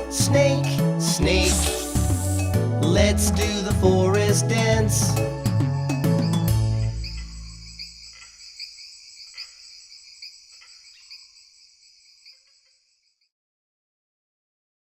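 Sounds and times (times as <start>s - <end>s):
crickets chirping: 5.2s - 13.3s.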